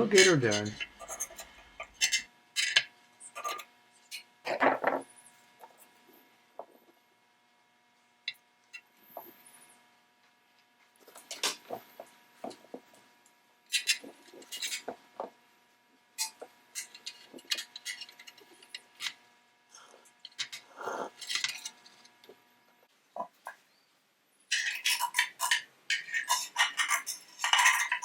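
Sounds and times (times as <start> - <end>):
hand tools being handled: 24.5 - 28.0.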